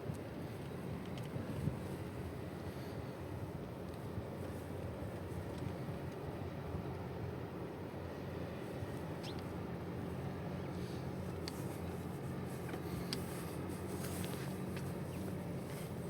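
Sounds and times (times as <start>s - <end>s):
traffic hum: 0.0s - 16.0s
bicycle rolling noise: 10.8s - 16.0s.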